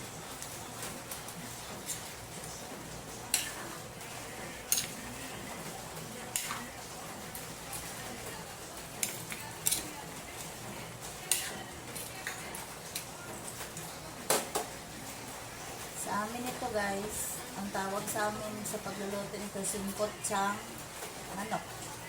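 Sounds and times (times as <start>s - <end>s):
metal utensil stirring in pan: 0.0s - 14.8s.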